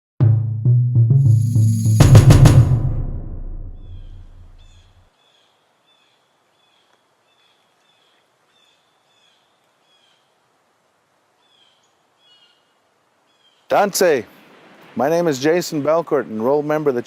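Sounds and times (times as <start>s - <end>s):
deep drum hit: 0.2s - 4.8s.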